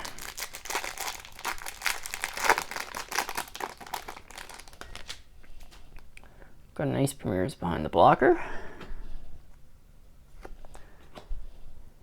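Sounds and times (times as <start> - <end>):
wrapper crinkling and tearing: 0.0 - 5.3.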